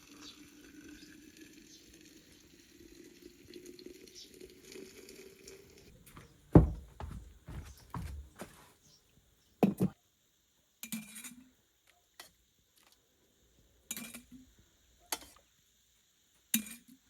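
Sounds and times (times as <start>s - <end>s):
water running into a container: 0.0s - 5.9s
knocks: 6.6s - 8.4s.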